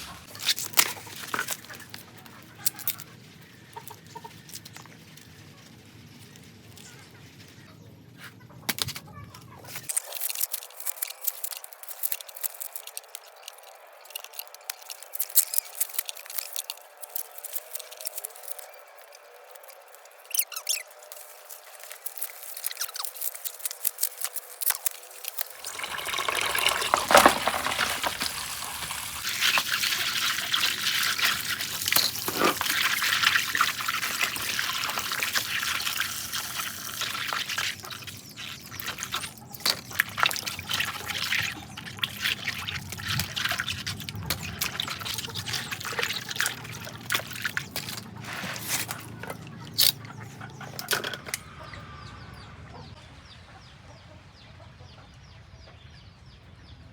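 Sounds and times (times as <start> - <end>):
liquid pouring and trickling: 9.8 - 51.4.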